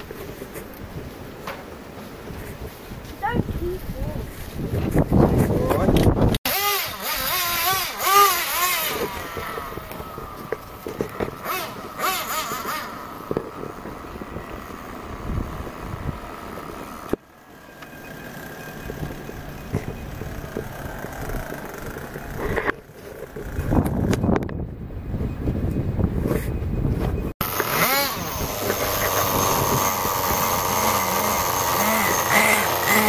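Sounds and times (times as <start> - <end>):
rc car motor revving: 6.5 - 17.2, 27.4 - 33.0.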